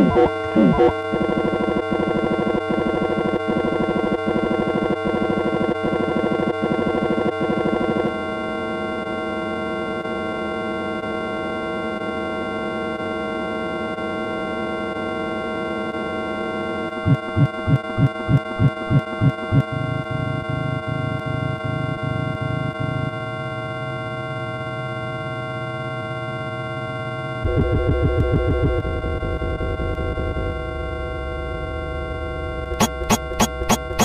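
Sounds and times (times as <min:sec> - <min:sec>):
synthesized pulsing drone: 0:00.0 - 0:08.0, 0:17.0 - 0:23.3, 0:27.4 - 0:34.0.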